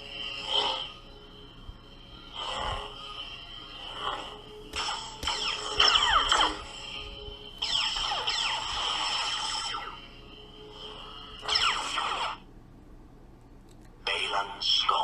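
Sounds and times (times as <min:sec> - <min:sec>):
lightsaber electric hum: 0:00.0 - 0:12.6
lightsaber swing sounds: 0:03.9 - 0:07.0, 0:07.6 - 0:10.0.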